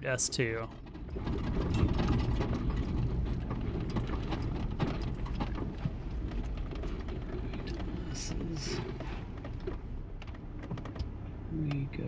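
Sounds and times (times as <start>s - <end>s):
vehicle engine and tyres rumbling: 0.0s - 12.0s
vehicle rattling: 0.0s - 12.0s
clicks and knocks from bumps: 1.2s - 8.0s, 8.8s - 11.1s.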